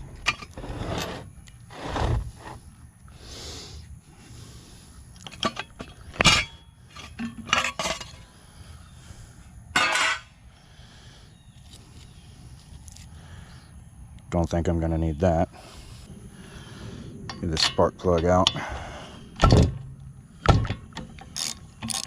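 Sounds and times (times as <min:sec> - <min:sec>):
metal tools clinking: 0:05.2 - 0:08.2, 0:09.8 - 0:10.3, 0:17.3 - 0:18.7.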